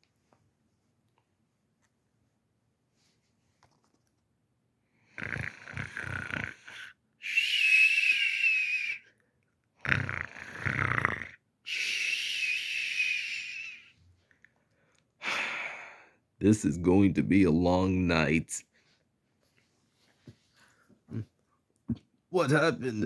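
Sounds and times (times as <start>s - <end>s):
rasping snore: 5.1s - 7.8s, 9.8s - 11.4s
high wavering breath whistle: 7.2s - 9.1s, 11.7s - 13.8s.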